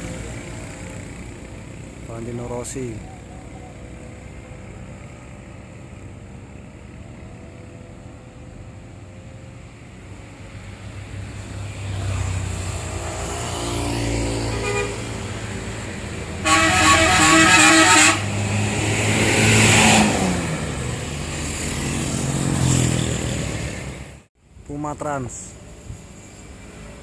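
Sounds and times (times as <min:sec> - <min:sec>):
bus diesel engine running: 0:00.0 - 0:24.3
multi-tone horn tune: 0:14.4 - 0:15.3, 0:16.4 - 0:18.4.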